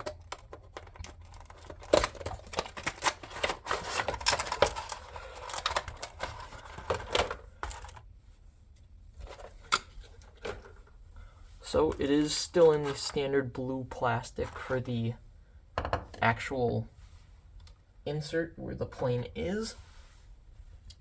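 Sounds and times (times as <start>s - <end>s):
box opening clicks and rustles: 0.0s - 8.1s, 9.2s - 10.9s.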